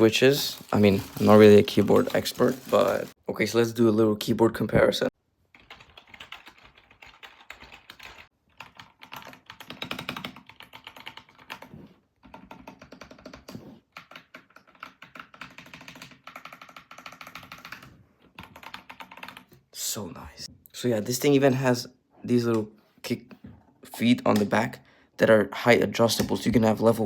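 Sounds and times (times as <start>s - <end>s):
fast typing on keyboard: 0.6s - 3.2s, 5.5s - 19.5s.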